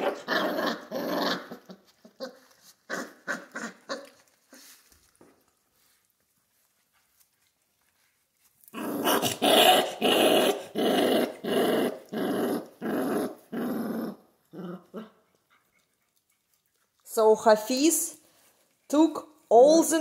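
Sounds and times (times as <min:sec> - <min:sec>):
puppy growling: 0:00.0 - 0:04.7, 0:08.6 - 0:17.1.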